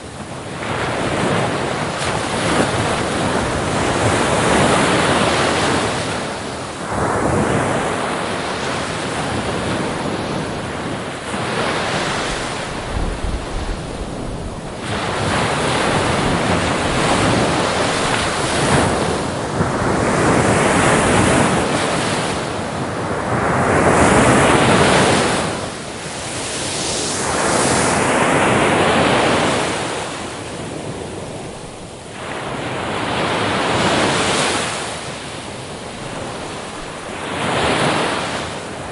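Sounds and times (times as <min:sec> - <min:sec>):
sea waves breaking on shore: 0:00.0 - 0:38.9
wind on microphone: 0:00.0 - 0:38.9.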